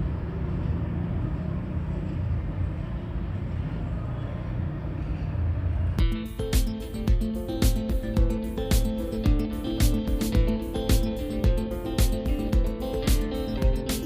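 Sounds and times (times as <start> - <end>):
guitar music: 6.0 - 14.0.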